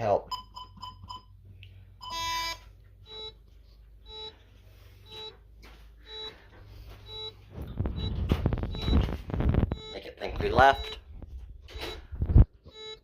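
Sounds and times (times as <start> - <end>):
keypad beeping: 2.0 - 3.4, 4.0 - 4.4, 5.1 - 5.3, 6.1 - 6.3, 7.0 - 11.1, 11.7 - 13.0
handling noise: 5.1 - 9.9
keypad long tone: 7.1 - 11.1, 11.7 - 13.0.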